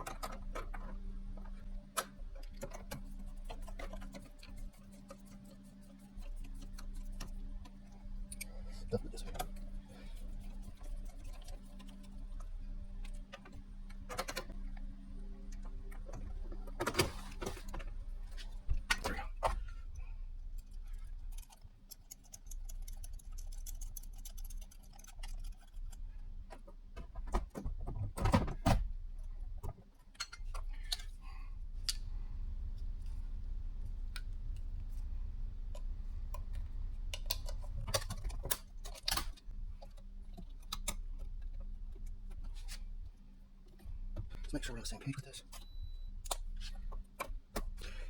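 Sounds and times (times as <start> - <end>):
steady low hum: 0.0 - 48.0
metallic clicks and knocks of lock parts: 35.7 - 42.4.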